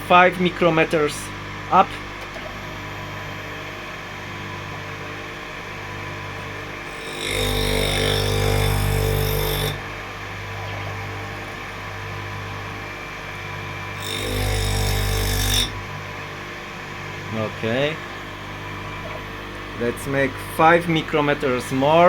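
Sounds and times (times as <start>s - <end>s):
grinder motor hum: 0.0s - 22.0s
grinding stone scraping steel: 6.4s - 11.1s, 13.9s - 16.0s.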